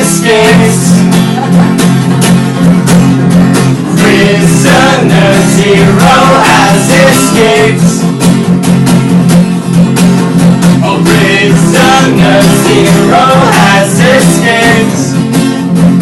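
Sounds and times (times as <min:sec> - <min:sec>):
person singing: 0:00.0 - 0:01.6, 0:03.9 - 0:08.1, 0:10.8 - 0:15.3
guitar: 0:00.0 - 0:16.0.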